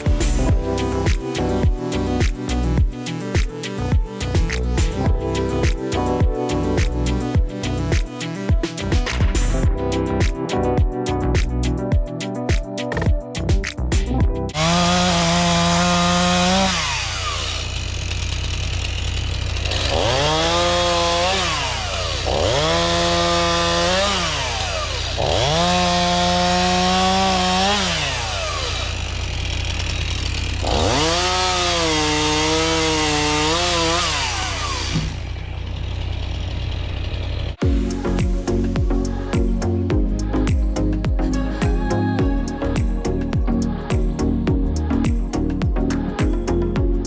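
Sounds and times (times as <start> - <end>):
music with a beat: 0.0 - 14.5, 37.6 - 47.0
small engine revving: 14.6 - 37.6.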